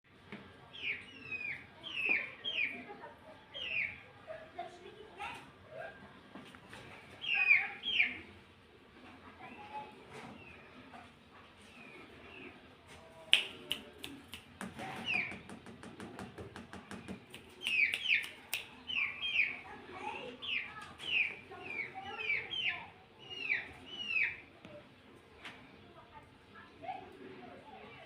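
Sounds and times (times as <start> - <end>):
chicks peeping: 0.6 - 4.2, 5.8 - 8.4, 9.0 - 26.2
sharp clicks and taps: 13.3 - 18.8.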